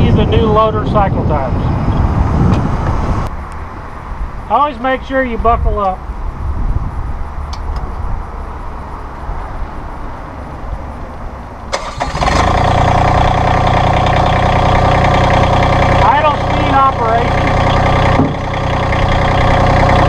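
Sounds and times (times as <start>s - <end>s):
low steady rumble: 10.9s - 20.0s
diesel engine starting and idling: 11.4s - 20.0s.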